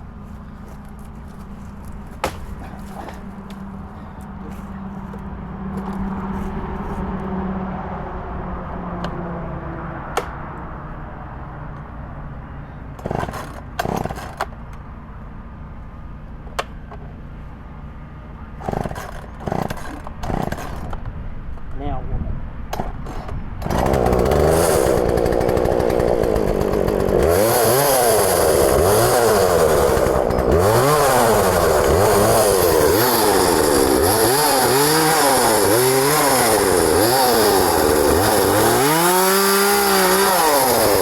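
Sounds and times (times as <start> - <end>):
chainsaw cutting wood: 0.0 - 5.2, 13.0 - 14.6, 18.6 - 21.0, 22.7 - 41.0
sharp knocks and thumps: 0.7 - 3.7.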